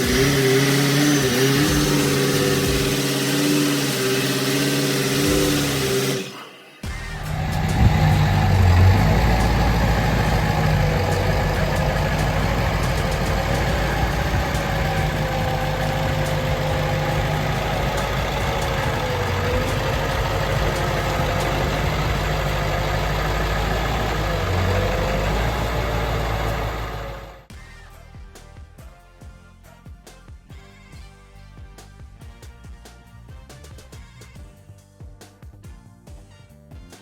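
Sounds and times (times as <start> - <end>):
vehicle engine running: 0.0 - 27.5
thin wavering whine: 5.2 - 25.4.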